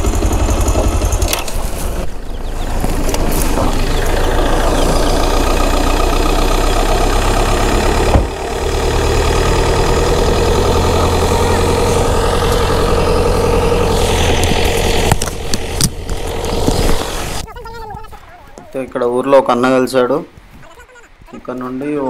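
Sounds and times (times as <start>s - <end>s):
motorcycle engine running: 0.0s - 17.5s.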